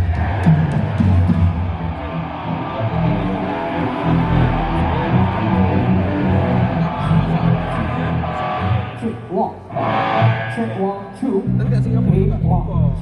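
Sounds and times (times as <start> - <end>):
electric guitar through amplifier: 0.0 - 13.0
low bass line: 1.7 - 9.0, 11.5 - 13.0.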